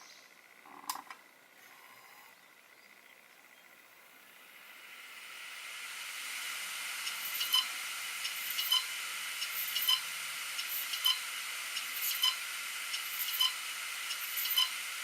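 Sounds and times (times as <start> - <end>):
hard drive platters spinning: 4.1 - 15.0.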